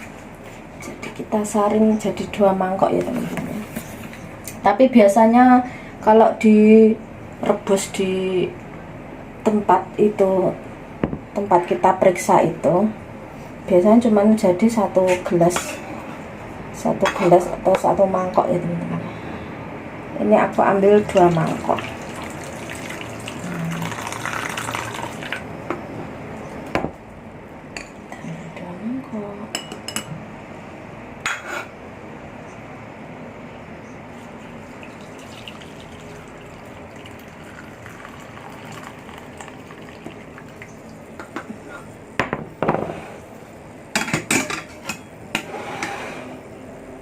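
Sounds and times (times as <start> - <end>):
liquid pouring: 21.4 - 25.4, 34.6 - 41.1.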